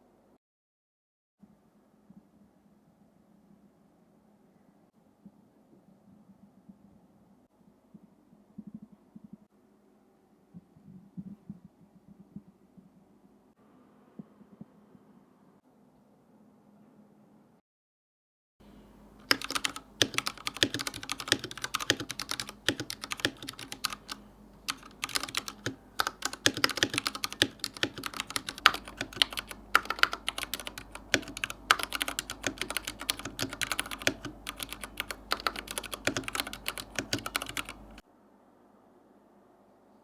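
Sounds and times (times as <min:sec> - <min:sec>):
mechanical keyboard typing: 0:19.2 - 0:38.0.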